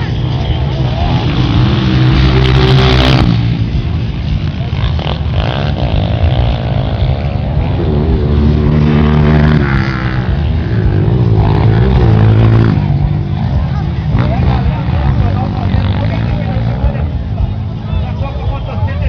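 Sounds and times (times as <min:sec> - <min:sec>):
dirt bike engine revving: 0:00.8 - 0:13.2.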